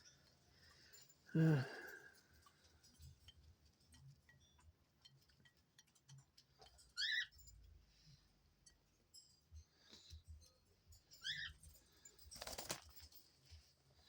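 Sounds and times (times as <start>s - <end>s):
high-pitched bird chirp: 7.0s - 7.4s, 11.2s - 11.6s.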